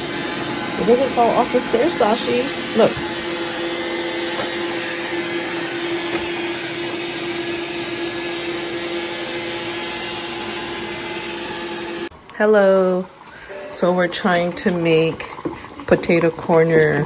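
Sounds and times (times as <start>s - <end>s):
robot vacuum whirring: 0.0s - 12.1s.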